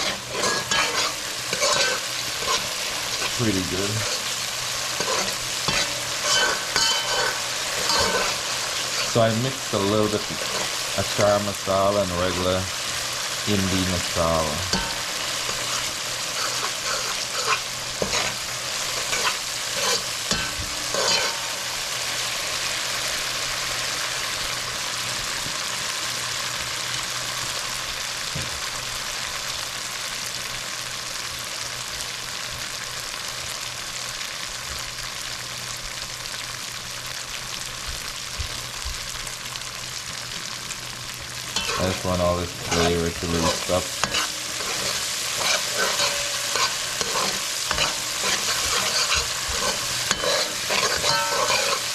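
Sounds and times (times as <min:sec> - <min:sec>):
spoon scraping pot: 0:00.0 - 0:03.3, 0:05.0 - 0:09.2, 0:15.5 - 0:18.3, 0:19.0 - 0:21.3, 0:41.6 - 0:42.0, 0:42.6 - 0:51.9
paste frying in hot oil: 0:00.0 - 0:51.9.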